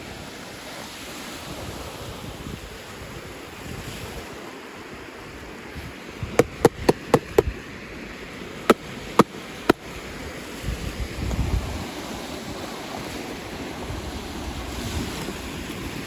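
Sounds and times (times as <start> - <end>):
hard objects clicking: 6.4 - 7.5.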